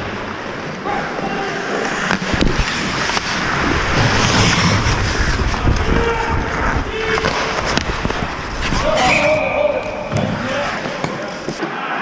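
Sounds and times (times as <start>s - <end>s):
skates scraping on ice: 0.0s - 12.0s
low rumble: 2.3s - 9.0s.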